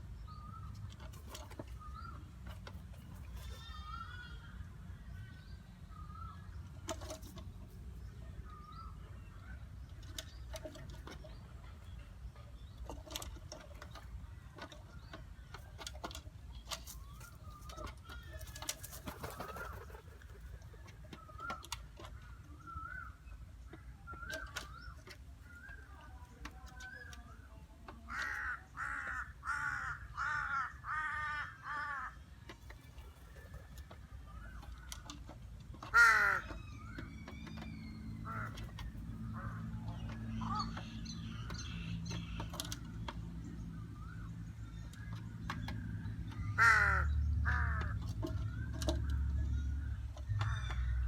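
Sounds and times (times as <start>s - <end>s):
soft bird calls: 0.0s - 51.0s
crow cawing: 28.1s - 32.2s, 35.9s - 36.5s, 46.6s - 47.9s.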